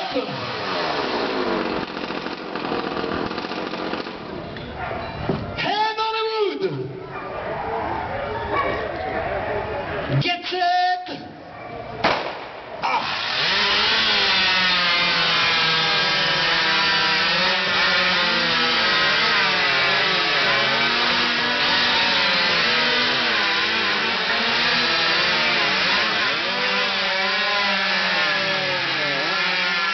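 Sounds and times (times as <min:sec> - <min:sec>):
chainsaw engine running: 0:00.0 - 0:04.6, 0:12.8 - 0:29.9.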